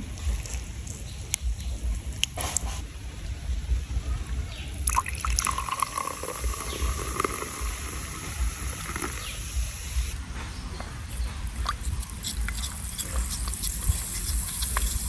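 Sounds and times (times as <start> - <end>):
low rumble: 0.0 - 15.0
steady high hiss: 0.0 - 15.0
water trickling: 4.8 - 10.1.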